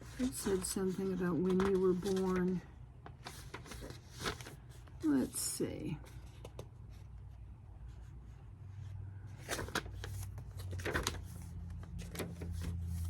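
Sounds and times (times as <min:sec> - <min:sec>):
paper pages rustling: 0:00.0 - 0:05.1, 0:06.0 - 0:07.2, 0:09.3 - 0:13.0.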